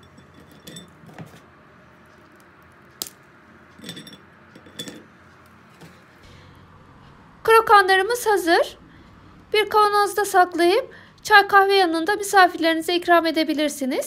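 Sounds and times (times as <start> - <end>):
brittle pieces clicking together: 2.1 - 3.2
brittle snapping: 2.2 - 3.3.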